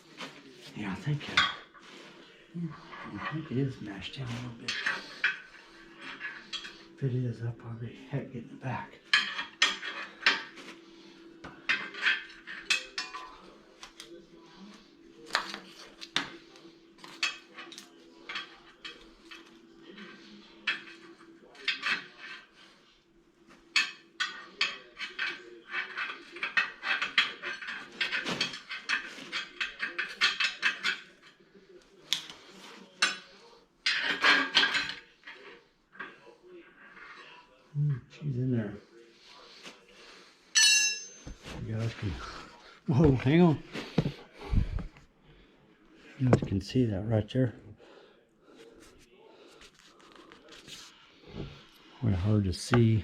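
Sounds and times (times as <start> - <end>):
metal tools clinking and clanking: 2.7 - 7.0, 9.0 - 10.8, 11.5 - 14.0, 17.0 - 22.6, 23.7 - 31.4, 32.1 - 36.2, 40.5 - 44.9
metal tools clinking: 23.8 - 31.4, 32.5 - 36.2, 40.5 - 42.1.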